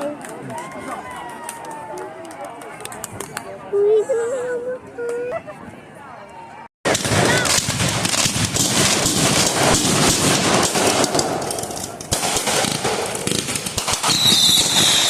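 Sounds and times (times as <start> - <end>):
firecrackers popping: 6.9 - 15.0.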